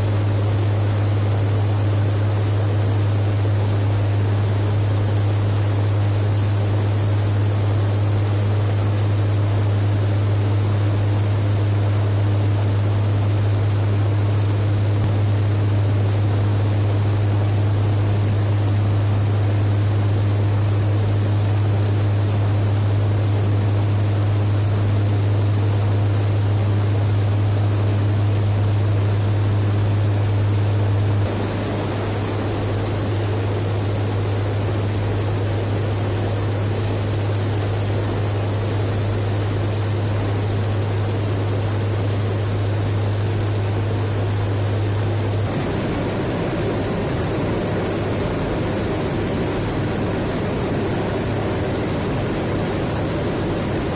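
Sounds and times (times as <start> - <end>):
turboprop propeller drone: 0.0 - 53.9.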